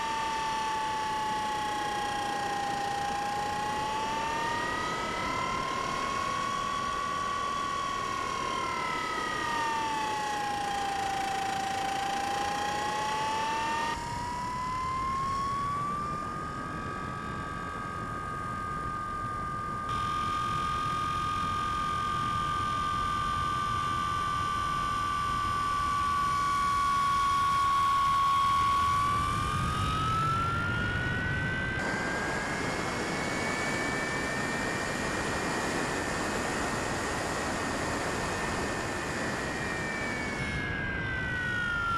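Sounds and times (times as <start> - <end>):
model plane motor whining: 0.0 - 41.9.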